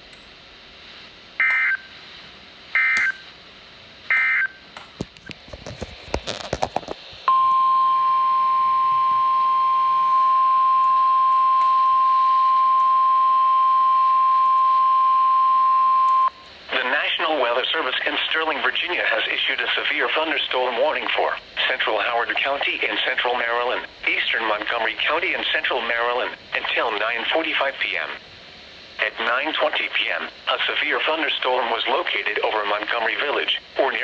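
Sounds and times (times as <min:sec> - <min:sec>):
crackling static: 0:00.6 - 0:34.0
steady warning alarm tone: 0:01.4 - 0:01.9, 0:02.8 - 0:03.2, 0:04.1 - 0:04.6, 0:07.3 - 0:16.5.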